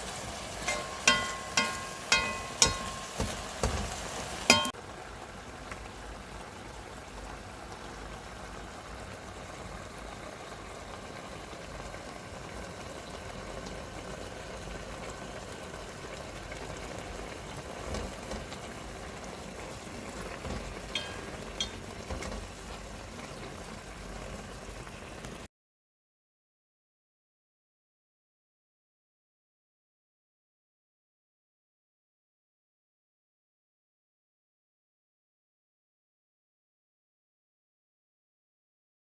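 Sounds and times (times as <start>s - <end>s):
vegetables sizzling in oil: 0.0s - 25.5s.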